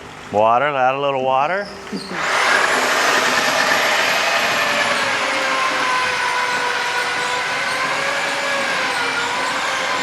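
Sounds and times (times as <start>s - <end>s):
power tool grinding with motor whine: 2.1s - 10.0s.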